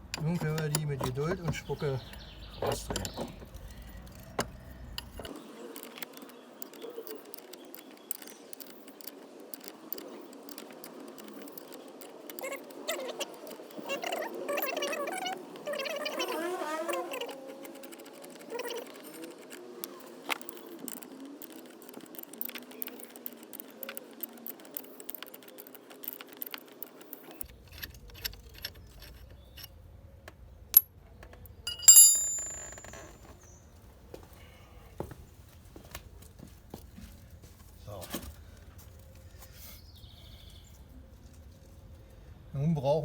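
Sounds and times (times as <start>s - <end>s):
metal hand tools clicking: 2.9s - 15.2s, 31.7s - 33.0s
ringing metallic clink: 31.7s - 33.2s.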